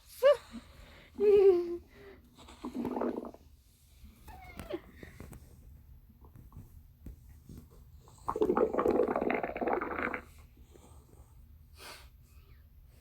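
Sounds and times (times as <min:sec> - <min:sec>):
stomach growling: 0:02.5 - 0:03.5, 0:08.1 - 0:10.4.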